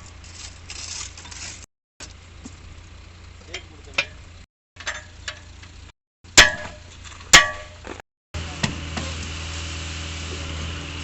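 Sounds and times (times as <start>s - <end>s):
loud ringing metal clangs: 3.6s - 5.6s, 6.3s - 7.8s.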